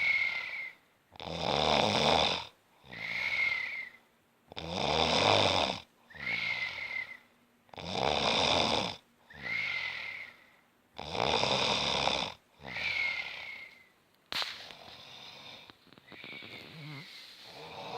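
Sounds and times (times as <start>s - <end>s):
whistling breath: 0.0s - 0.9s, 2.9s - 4.1s, 6.1s - 7.3s, 9.3s - 10.6s, 12.7s - 14.0s, 16.0s - 17.4s
rattling snoring: 4.6s - 6.8s, 7.8s - 9.8s, 11.0s - 13.4s, 14.7s - 17.9s.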